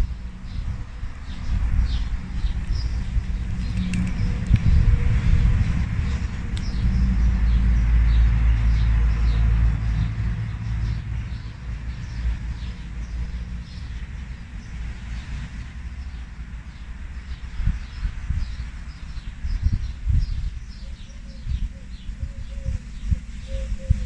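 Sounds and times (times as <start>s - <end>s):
low rumble: 0.0s - 15.0s
small birds chirping: 0.5s - 24.0s.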